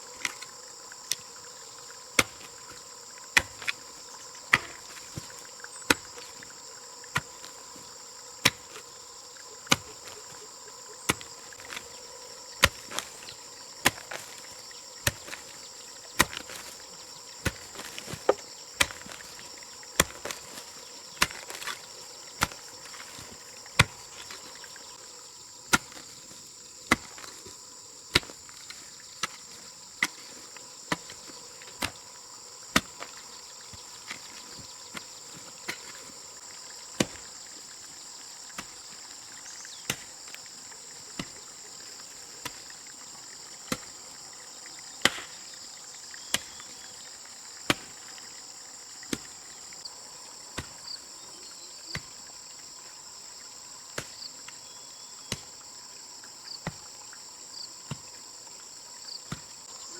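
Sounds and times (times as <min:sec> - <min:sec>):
high-pitched insect chorus: 0:00.0 - 0:59.9.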